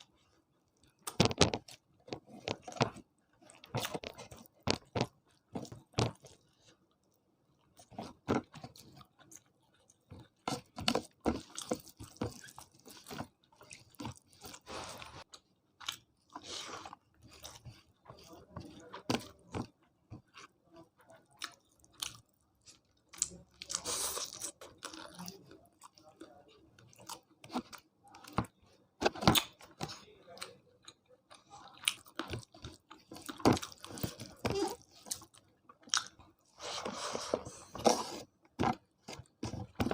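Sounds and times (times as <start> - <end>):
person chewing and crunching food: 0.0 - 39.9.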